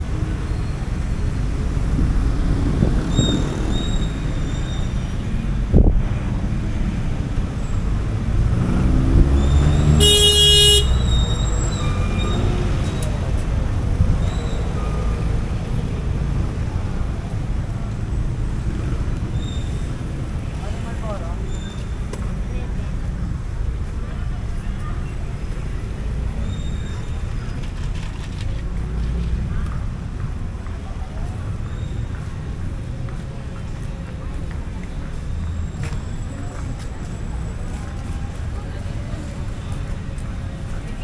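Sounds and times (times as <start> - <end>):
street traffic engines: 0.0 - 41.0
vehicle horn blast: 9.8 - 11.2.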